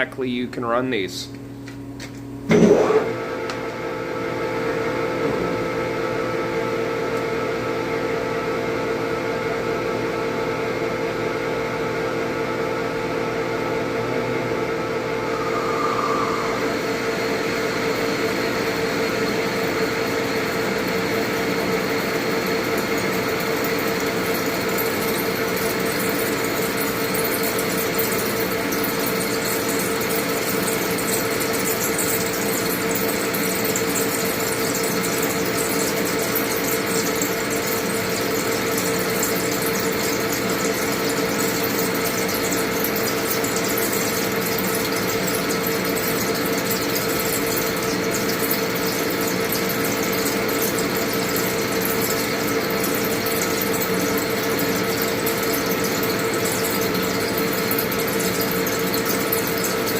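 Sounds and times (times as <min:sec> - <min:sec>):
lathe whining: 0:14.6 - 0:24.4.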